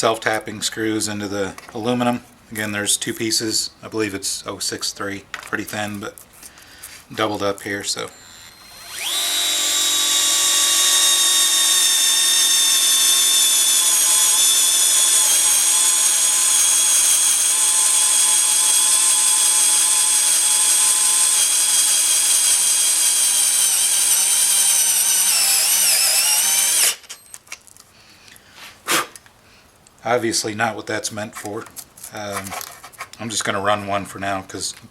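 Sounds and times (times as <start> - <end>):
cordless screwdriver motor whining: 8.0 - 27.4.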